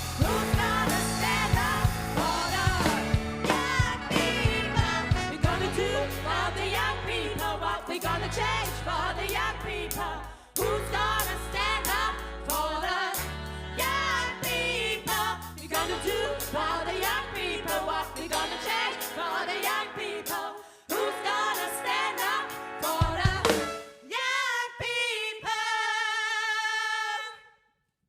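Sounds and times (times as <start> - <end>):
band music with singing: 0.0 - 24.2.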